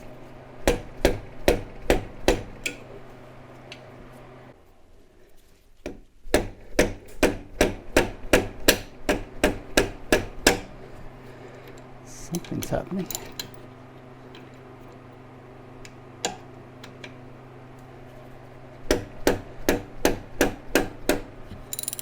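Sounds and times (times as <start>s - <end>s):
mallet striking socket wrench: 19.0s - 22.0s.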